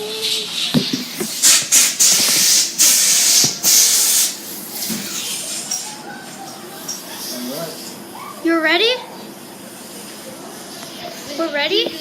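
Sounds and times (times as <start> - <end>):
loud hissing bursts: 0.9 - 5.7.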